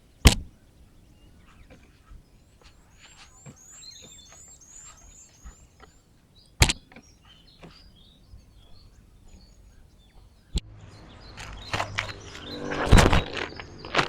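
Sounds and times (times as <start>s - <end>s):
small birds chirping: 0.0s - 14.0s.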